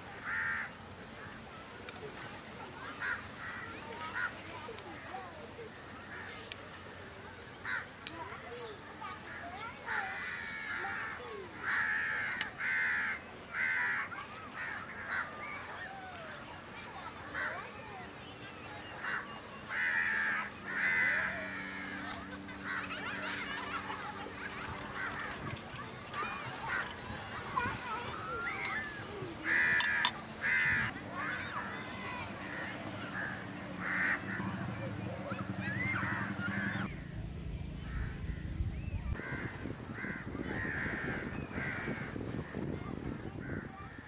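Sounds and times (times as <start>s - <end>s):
crows cawing: 0.2s - 0.7s, 3.0s - 4.4s, 7.6s - 8.0s, 9.3s - 15.5s, 17.4s - 17.6s, 19.0s - 23.0s, 24.4s - 26.9s, 29.4s - 31.7s, 32.5s - 34.5s, 37.8s - 38.2s, 39.2s - 42.1s.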